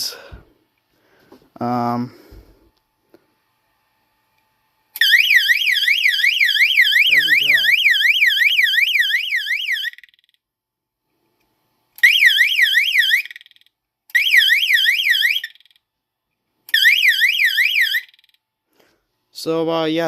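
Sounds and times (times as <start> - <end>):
fire alarm warbling tone: 5.0 - 10.3, 12.0 - 15.7, 16.7 - 18.4.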